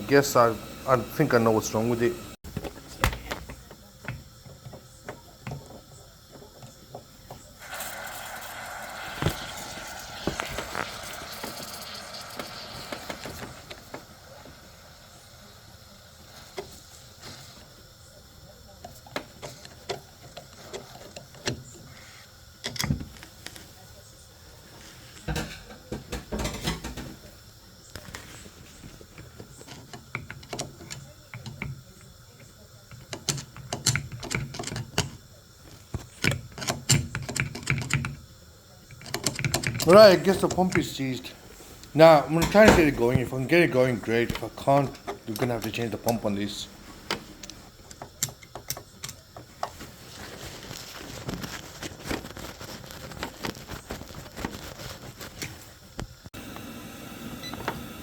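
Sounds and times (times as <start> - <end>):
boiler hiss: 0.0 - 58.0
tools clicking and rattling on boiler: 2.5 - 7.4, 28.2 - 41.0, 44.2 - 46.3, 47.0 - 55.6.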